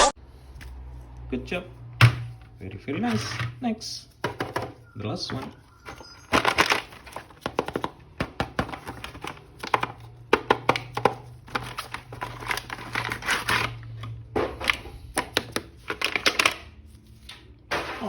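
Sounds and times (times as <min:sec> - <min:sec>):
packaging rustling: 0:05.4 - 0:14.0.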